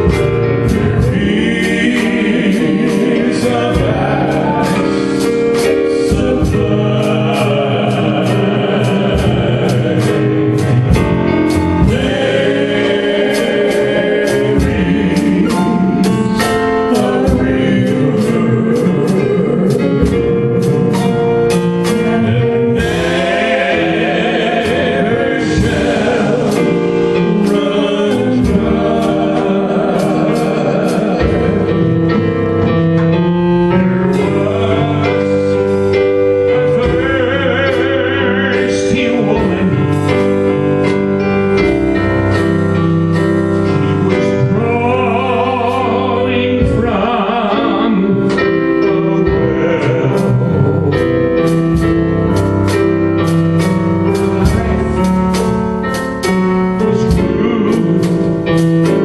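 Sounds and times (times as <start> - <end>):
keyboard accompaniment: 0.0 - 59.0
person singing worship song: 0.7 - 11.0, 11.6 - 32.2, 33.9 - 41.0, 43.6 - 51.9.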